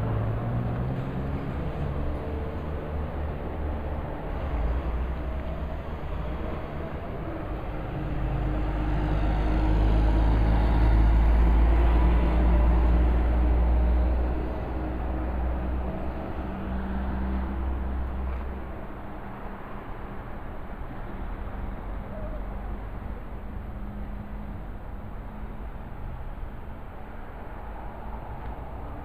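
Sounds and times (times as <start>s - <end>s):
vehicle engine rumble: 0.0s - 29.0s.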